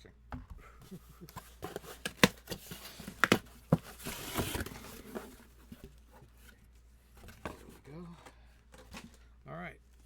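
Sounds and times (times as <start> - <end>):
cardboard snapping and knocking: 1.6 - 4.7.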